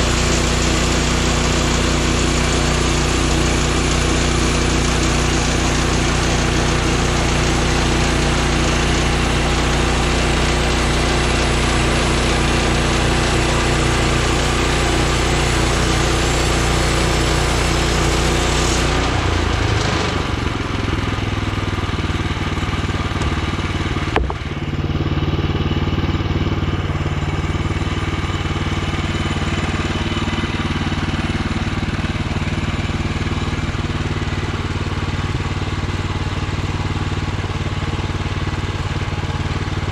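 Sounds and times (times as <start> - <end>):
band blade sawing log: 0.0 - 20.2
bandsaw mill engine: 0.0 - 39.9
sharp knock: 24.1 - 24.5.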